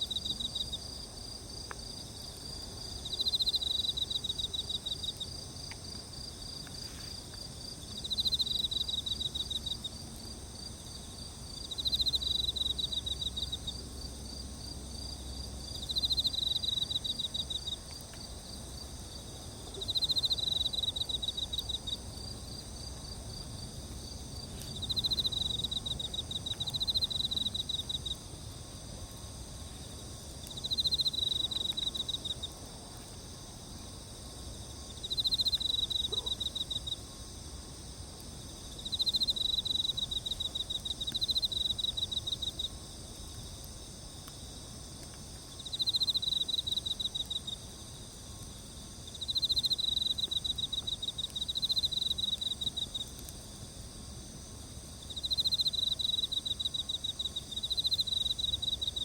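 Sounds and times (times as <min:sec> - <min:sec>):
high insect drone: 0:00.0 - 0:59.0.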